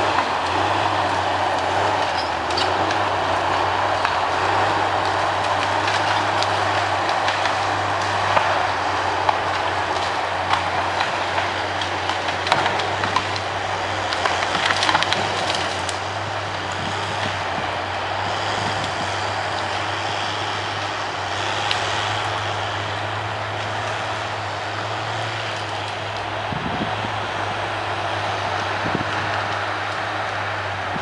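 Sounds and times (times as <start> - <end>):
diesel engine running: 0.0 - 31.0
knocks and clatter: 9.2 - 13.5.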